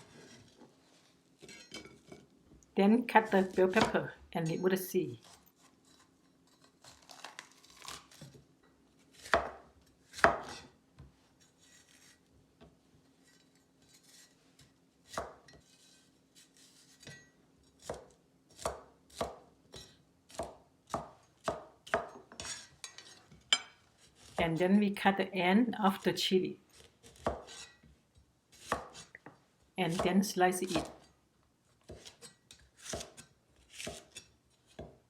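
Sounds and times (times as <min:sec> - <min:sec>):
knife cutting pepper on board: 0:09.2 - 0:10.7, 0:26.7 - 0:27.7, 0:29.9 - 0:31.1, 0:31.8 - 0:35.0.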